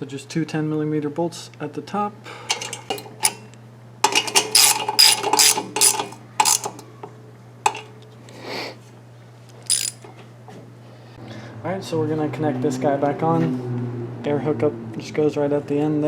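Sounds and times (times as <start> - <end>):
socket ratchet clicking: 2.5 - 6.9, 7.7 - 7.9, 9.7 - 10.1.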